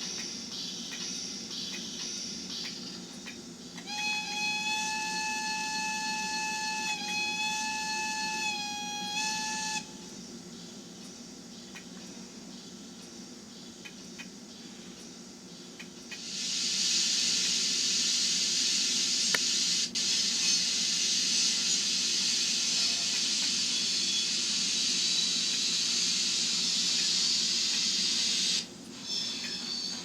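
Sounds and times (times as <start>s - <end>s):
steam hiss from small speaker: 16.2s - 30.0s.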